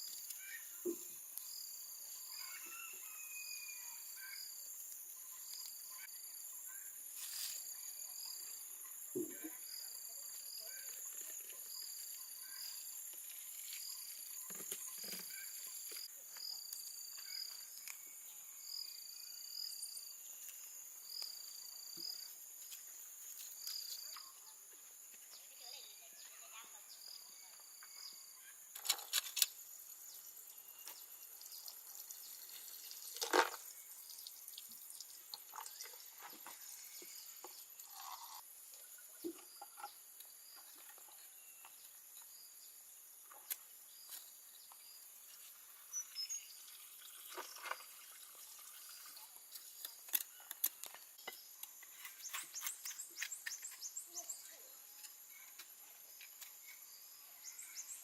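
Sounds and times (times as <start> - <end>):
insects droning: 0.0 - 58.0
faint chirps: 23.3 - 47.9, 48.8 - 58.0.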